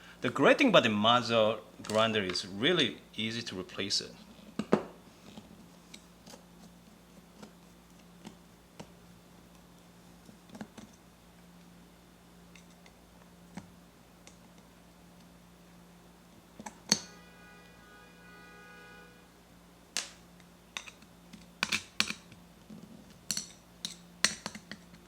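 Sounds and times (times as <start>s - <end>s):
faint steady hum: 0.0s - 25.0s
screwdriver clicking and tapping metal: 20.8s - 22.4s, 23.3s - 25.0s.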